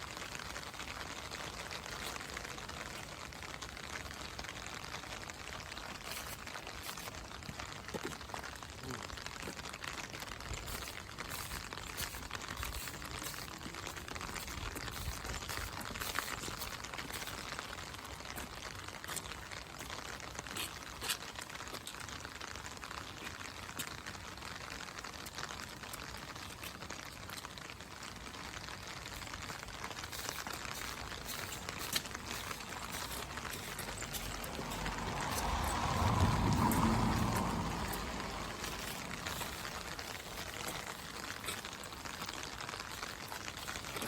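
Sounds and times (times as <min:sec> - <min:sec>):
raindrop ticks: 0:00.0 - 0:44.0
steady rain hiss: 0:00.0 - 0:44.0.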